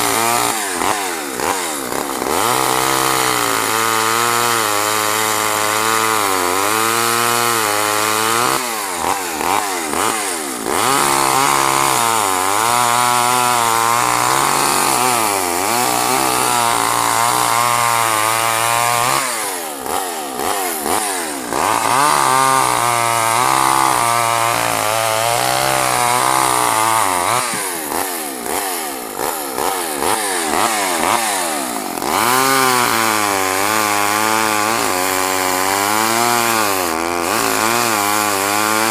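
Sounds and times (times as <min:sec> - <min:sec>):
chainsaw bogging in wood: 0:00.0 - 0:38.9.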